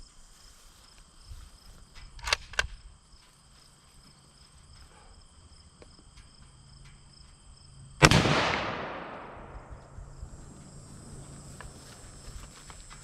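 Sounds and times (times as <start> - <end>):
rifle shot: 8.0 - 10.0.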